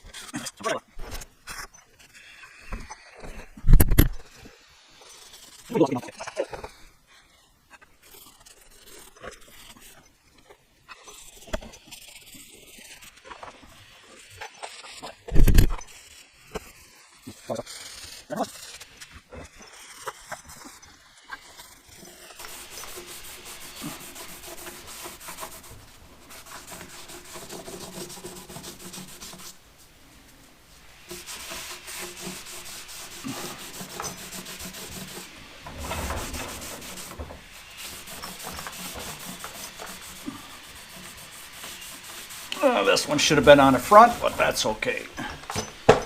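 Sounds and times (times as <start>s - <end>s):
hand rubbing wooden board: 21.5s - 46.0s.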